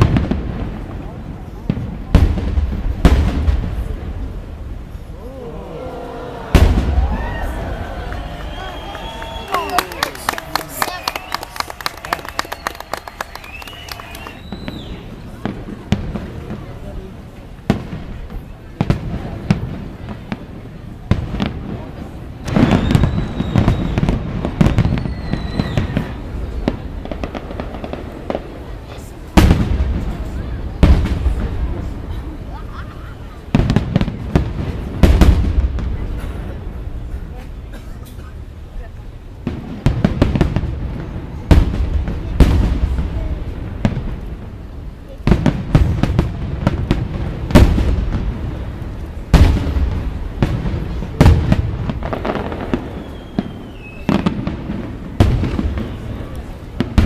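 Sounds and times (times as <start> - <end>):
firework burst: 0.0 - 37.7, 38.3 - 57.0
firework crackling: 0.0 - 57.0
rolling echo rumble: 0.0 - 57.0
firework whistle: 4.9 - 15.4, 22.5 - 26.6, 52.1 - 54.4
firework shells bursting: 6.5 - 16.3.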